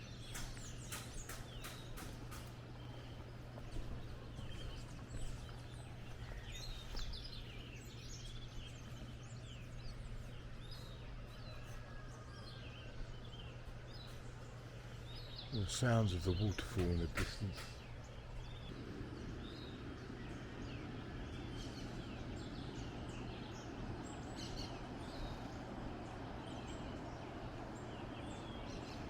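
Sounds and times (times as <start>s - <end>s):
birds chirping and calling: 0.0s - 29.0s
low steady hum: 0.0s - 29.0s
sharp clicks: 0.3s - 2.6s
distant waterfall rushing: 15.6s - 17.8s, 18.7s - 29.0s.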